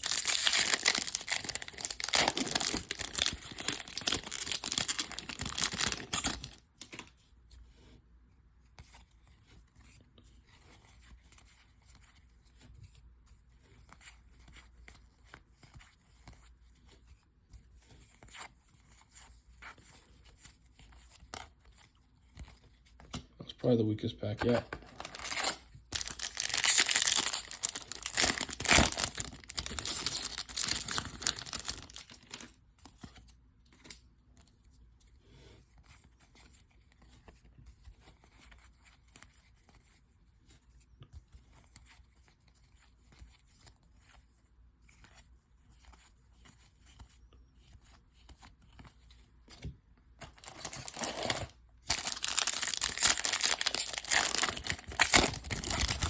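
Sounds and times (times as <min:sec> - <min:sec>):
foil wrappers tearing and crinkling: 0:00.0 - 0:06.6, 0:24.9 - 0:32.4, 0:50.2 - 0:56.0.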